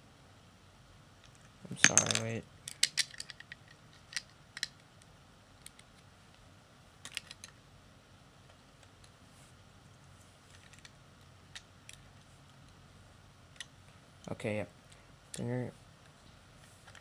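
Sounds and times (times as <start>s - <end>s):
plastic bricks clicking together: 1.8s - 4.8s, 7.0s - 7.5s.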